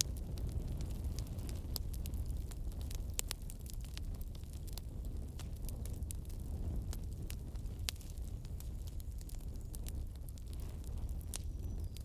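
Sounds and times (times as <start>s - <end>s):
firewood crackling: 0.0s - 12.0s
low rumble of flames: 0.0s - 12.0s
sharp pops of fire: 0.0s - 12.0s.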